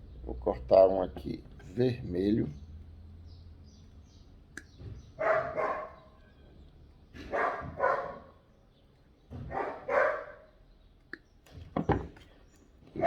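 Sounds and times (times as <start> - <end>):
dog barking: 5.2 - 6.1, 7.2 - 8.4, 9.4 - 10.5.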